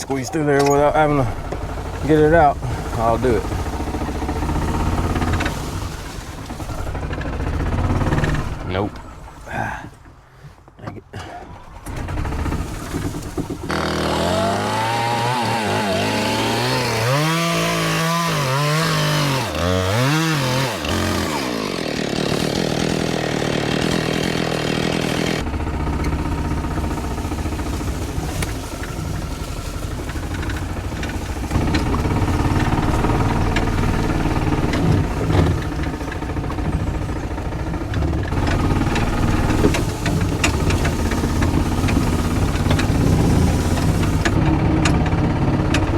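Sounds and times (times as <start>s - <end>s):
small petrol engine revving: 0.0s - 9.8s, 11.5s - 45.9s.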